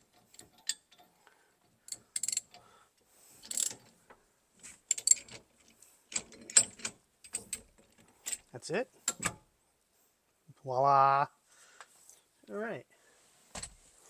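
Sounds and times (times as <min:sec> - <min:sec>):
ratchet clicks: 0:01.9 - 0:02.6.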